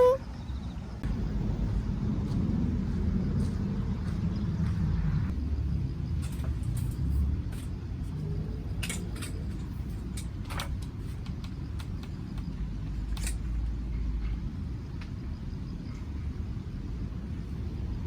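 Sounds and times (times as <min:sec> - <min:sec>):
low rumble: 0:00.6 - 0:10.2
light clicks and clinks: 0:08.7 - 0:11.9.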